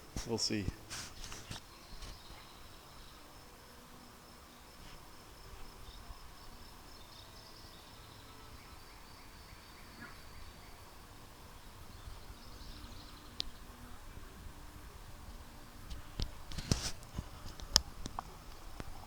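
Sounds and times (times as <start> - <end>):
high insect trilling: 0.0 - 19.0.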